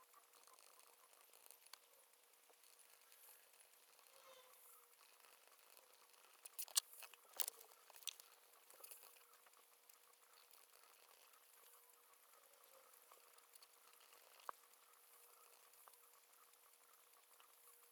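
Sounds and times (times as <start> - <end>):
paper rustling and clicks: 6.5 - 8.2.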